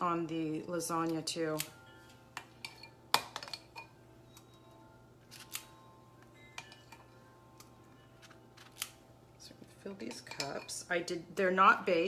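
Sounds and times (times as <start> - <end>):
metal utensil clinking on bowl: 2.4 - 4.5, 10.0 - 11.0.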